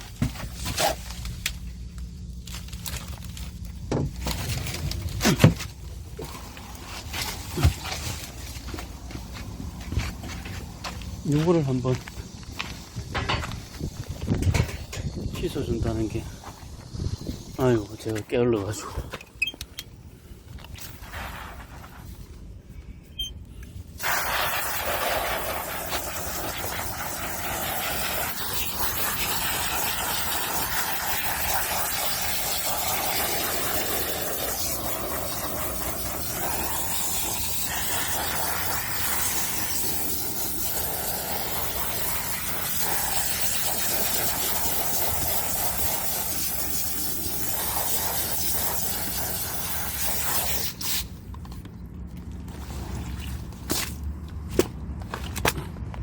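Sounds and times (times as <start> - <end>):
water spraying onto bedding: 24.0 - 51.0.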